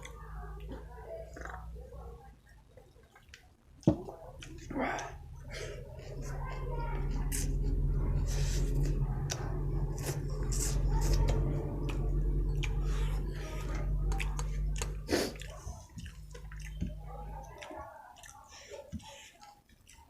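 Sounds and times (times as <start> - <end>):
steady low hum: 4.0 - 19.2
wet chewing and mouth smacks: 8.4 - 20.0.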